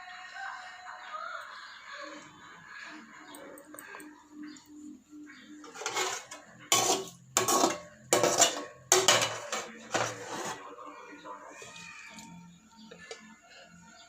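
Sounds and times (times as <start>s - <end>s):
metal spoon scraping a pot: 5.5s - 10.8s.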